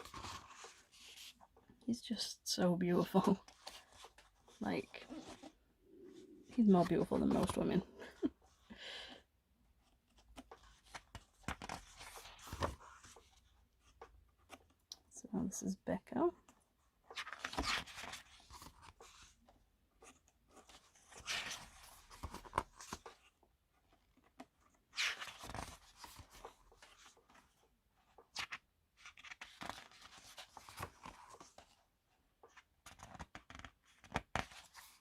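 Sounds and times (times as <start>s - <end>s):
book pages turning: 0.0s - 1.6s, 3.1s - 7.8s, 9.8s - 14.9s, 16.5s - 35.0s.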